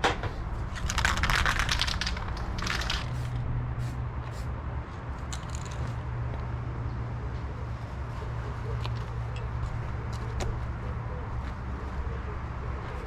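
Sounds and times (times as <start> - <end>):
aerosol spray can hissing: 2.0 - 4.5.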